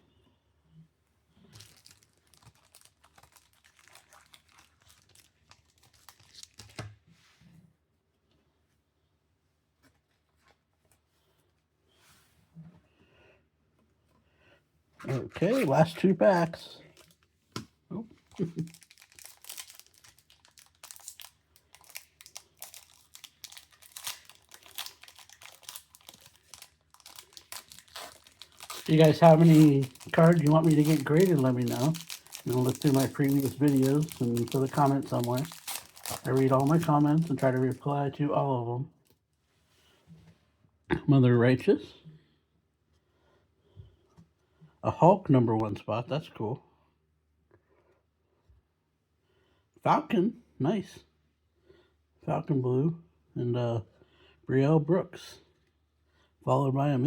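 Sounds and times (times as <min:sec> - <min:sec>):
plastic crinkling and rustling: 0:01.4 - 0:07.2, 0:15.0 - 0:17.6, 0:18.2 - 0:38.2.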